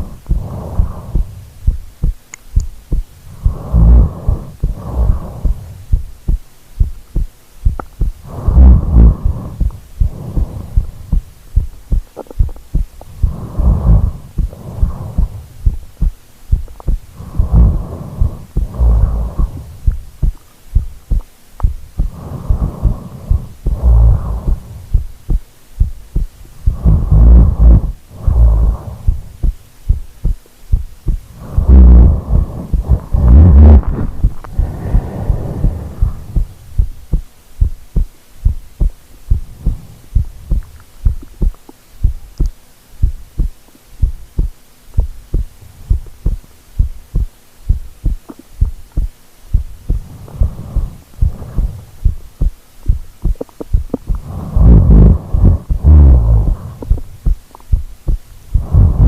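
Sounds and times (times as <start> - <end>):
loud rattling snores: 17.2 - 19.7, 54.2 - 56.9.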